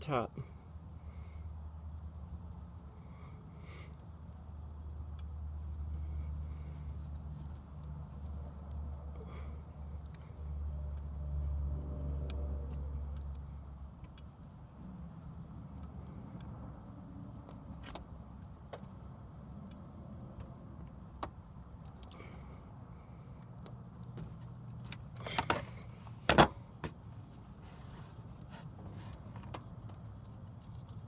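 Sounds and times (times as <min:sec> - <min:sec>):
low vehicle rumble: 0:00.5 - 0:30.7
small metallic clicks: 0:12.2 - 0:14.4, 0:21.2 - 0:22.3.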